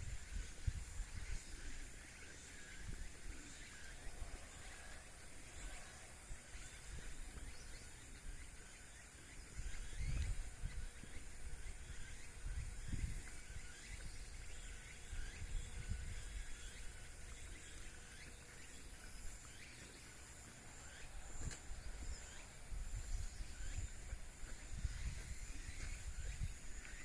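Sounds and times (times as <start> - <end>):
wind buffeting microphone: 0.0 - 19.7, 20.9 - 27.0
insects trilling: 0.0 - 27.0.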